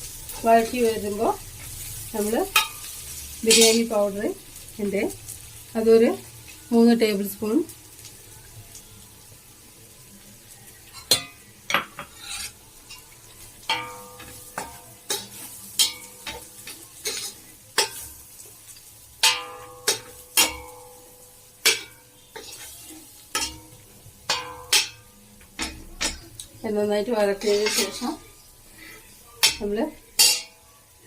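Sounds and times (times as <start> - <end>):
food sizzling in oil: 0.0 - 31.0
metal spoon clinking on pan: 2.5 - 3.9, 10.9 - 13.1, 13.7 - 18.2, 19.2 - 26.5, 27.3 - 28.3, 29.4 - 30.8.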